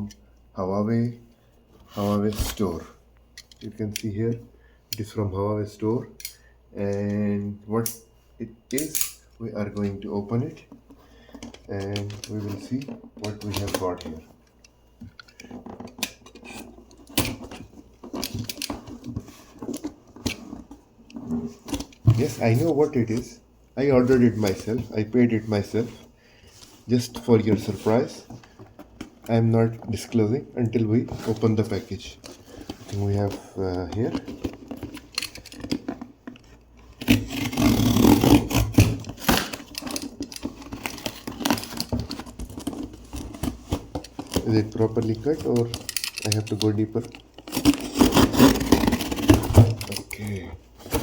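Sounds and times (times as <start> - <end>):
handling clicks and knocks: 10.7 - 23.2, 38.8 - 51.0
blade cutting cardboard box: 37.0 - 44.4, 47.4 - 49.9.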